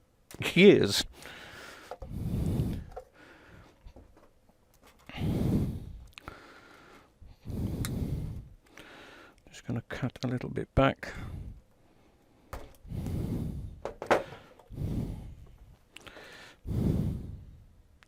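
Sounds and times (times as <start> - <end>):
person breathing out heavily: 1.1 - 4.0, 5.1 - 9.4, 11.2 - 17.7.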